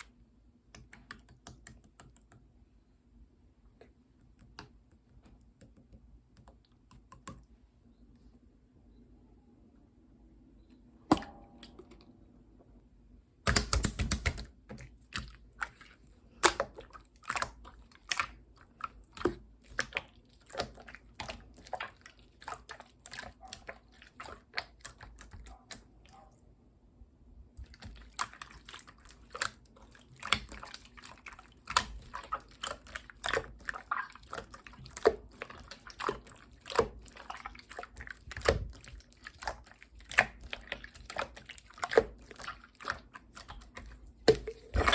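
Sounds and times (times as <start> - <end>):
slime squished by hand: 27.6 - 44.9.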